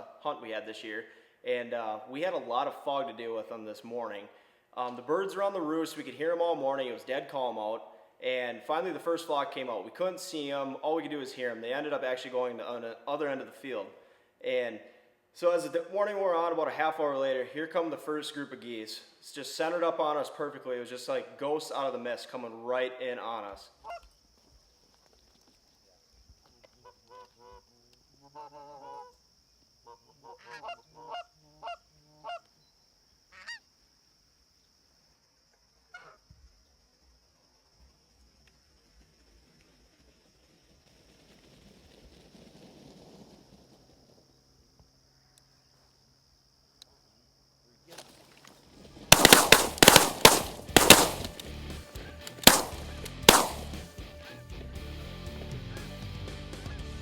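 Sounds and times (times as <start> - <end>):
shotgun shots: 49.1 - 51.5, 52.3 - 53.9.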